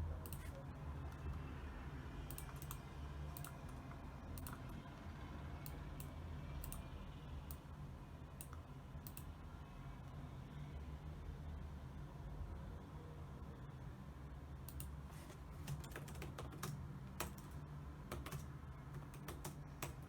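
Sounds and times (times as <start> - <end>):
keyboard keys clicking: 15.6 - 20.0.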